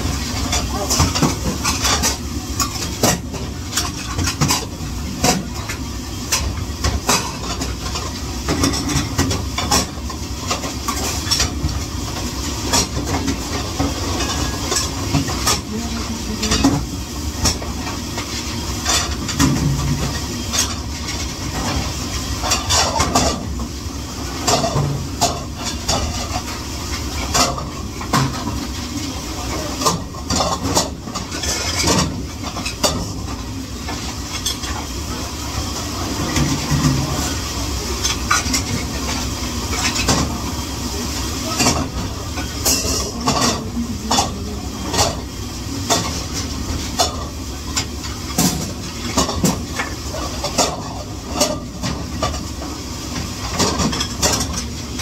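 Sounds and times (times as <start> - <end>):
dishes and utensils clattering: 0.3 - 23.6, 24.4 - 34.9, 35.8 - 52.6, 53.2 - 55.0.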